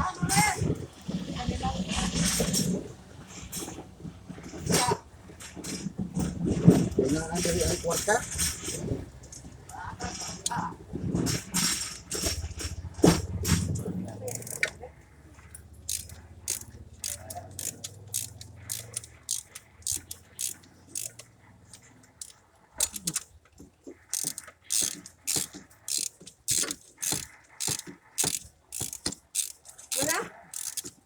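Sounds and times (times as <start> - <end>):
mechanical ratcheting and clicking: 11.3 - 14.8, 15.5 - 23.4, 24.0 - 31.0
rasping strokes: 15.9 - 23.2, 24.0 - 31.0.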